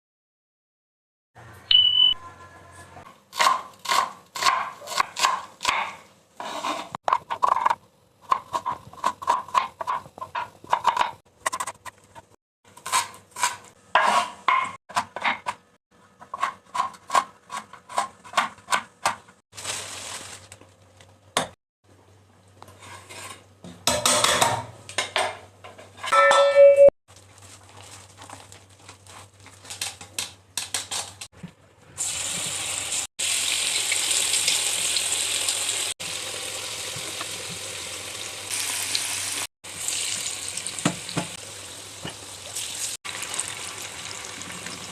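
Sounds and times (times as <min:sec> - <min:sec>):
metal utensils clinking on pots: 0:23.9 - 0:26.9.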